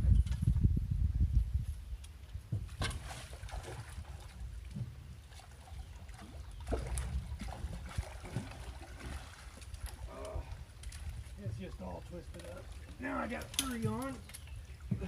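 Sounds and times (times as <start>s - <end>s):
water around a boat: 0.0s - 15.0s
wind rumbling: 0.0s - 15.0s
fishing gear knocking and clicking: 13.2s - 15.0s.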